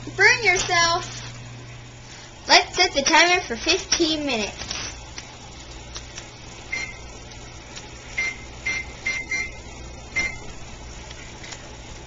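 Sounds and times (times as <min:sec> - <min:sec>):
kitchen timer beeps: 0:06.7 - 0:07.0, 0:08.1 - 0:09.6, 0:10.2 - 0:10.4.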